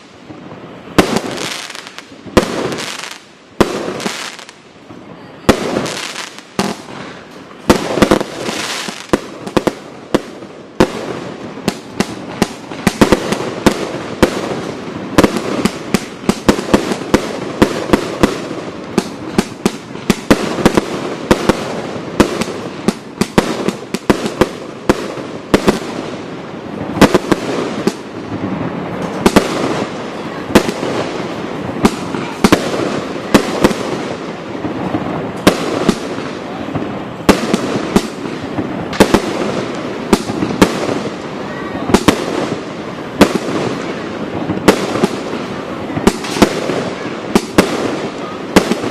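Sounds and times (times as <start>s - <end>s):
continuous noisy rush: 0.0s - 48.9s
firework bangs: 0.0s - 48.9s.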